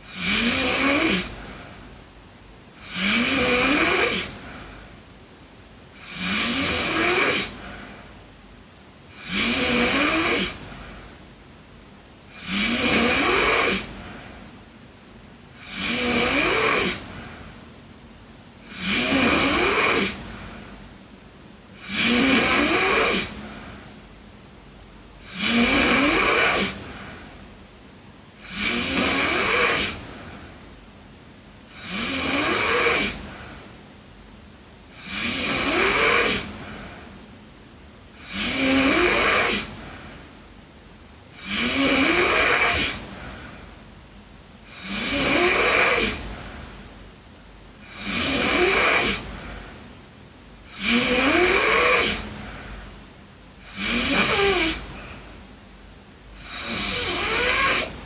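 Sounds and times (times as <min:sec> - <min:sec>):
girl snoring: 0:00.0 - 0:01.9, 0:02.8 - 0:05.0, 0:06.0 - 0:08.2, 0:09.1 - 0:11.2, 0:12.3 - 0:14.5, 0:15.5 - 0:17.5, 0:18.6 - 0:20.8, 0:21.8 - 0:24.0, 0:25.2 - 0:27.5, 0:28.4 - 0:30.6, 0:31.7 - 0:33.8, 0:34.8 - 0:37.2, 0:38.2 - 0:40.4, 0:41.3 - 0:43.8, 0:44.6 - 0:46.8, 0:47.8 - 0:49.8, 0:50.6 - 0:52.9, 0:53.6 - 0:55.4, 0:56.3 - 0:58.0.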